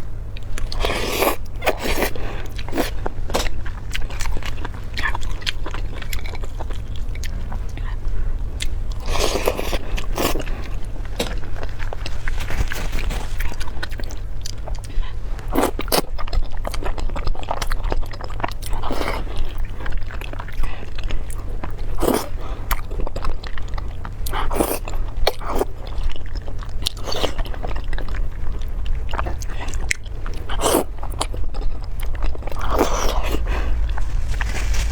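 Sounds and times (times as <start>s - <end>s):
steady low hum: 0.0s - 15.5s, 28.3s - 34.9s
person chewing food: 0.3s - 34.8s.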